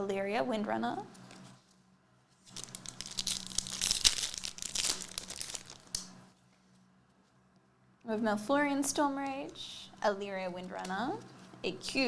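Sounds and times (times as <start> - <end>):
card pack wrapper tearing and crinkling: 2.5 - 6.2.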